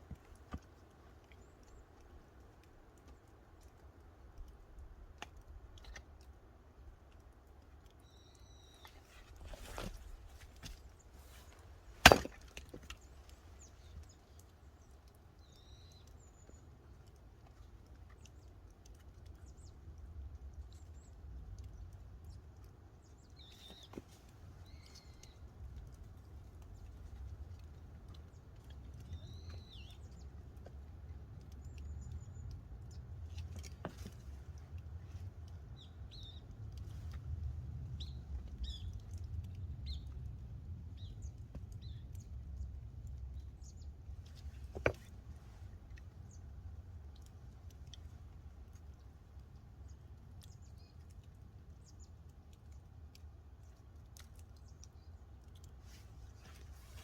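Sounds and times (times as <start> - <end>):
small birds chirping: 0.0 - 57.0
axe splitting firewood: 11.4 - 13.1.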